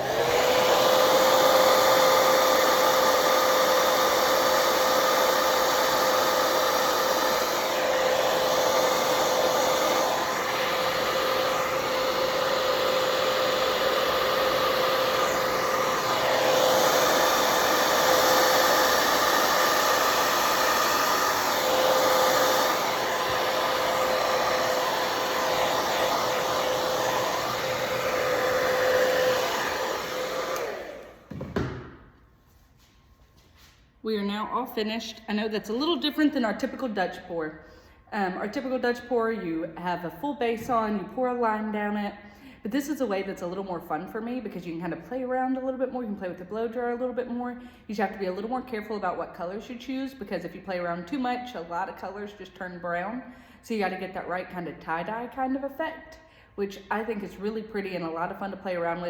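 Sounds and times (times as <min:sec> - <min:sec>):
blow dryer humming and hissing: 0:00.0 - 0:32.1.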